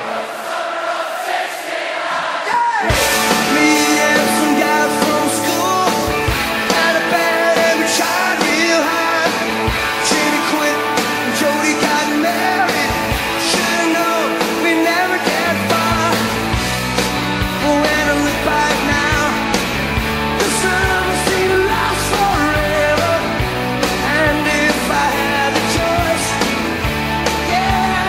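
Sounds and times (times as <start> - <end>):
rock music with singing: 0.0 - 28.0.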